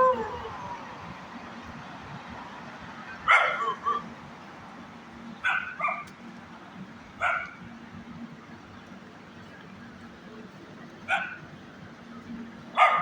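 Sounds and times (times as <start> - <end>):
small dog barking: 3.3 - 4.0, 5.4 - 6.1, 7.2 - 7.6, 11.1 - 11.4, 12.8 - 13.0.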